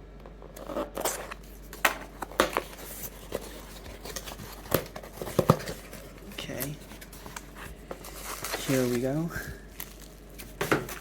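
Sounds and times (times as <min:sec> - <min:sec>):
plastic and paper crinkling: 0:02.2 - 0:11.0.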